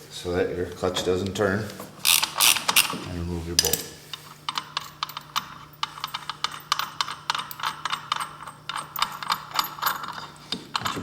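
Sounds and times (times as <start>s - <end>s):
ratchet wrench clicking: 2.0s - 3.0s, 3.6s - 11.0s.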